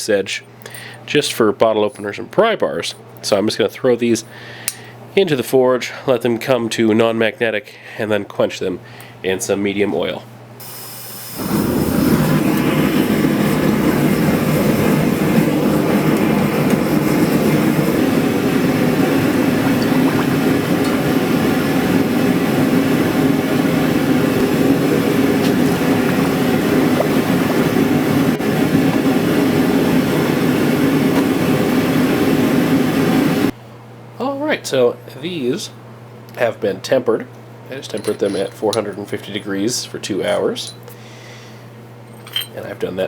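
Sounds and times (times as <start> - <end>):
forge roaring: 11.3 - 33.5.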